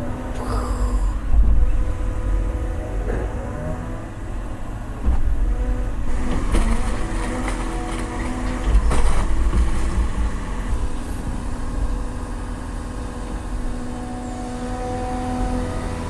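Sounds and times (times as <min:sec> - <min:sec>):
excavator diesel engine running: 0:00.0 - 0:16.0
clatter of knocks: 0:06.1 - 0:10.5.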